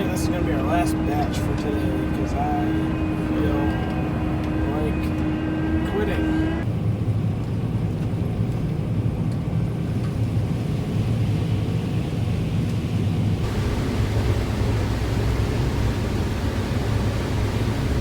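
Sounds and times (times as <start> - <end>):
machinery noise: 0.0 - 6.6, 13.4 - 18.0
combine engine rumble: 0.0 - 18.0.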